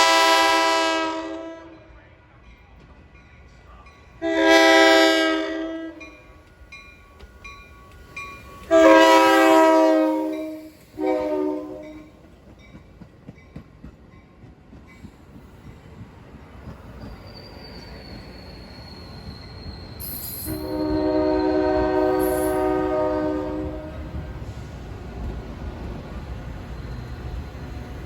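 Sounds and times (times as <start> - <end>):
locomotive air horn blasts: 0.0 - 1.8, 4.2 - 6.1, 8.7 - 12.1, 20.4 - 24.2.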